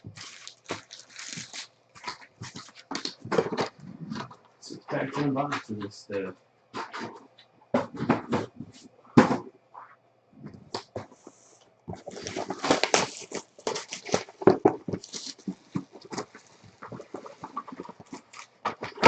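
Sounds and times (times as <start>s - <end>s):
card packs crinkling and tearing: 0.0s - 3.9s, 11.9s - 19.0s.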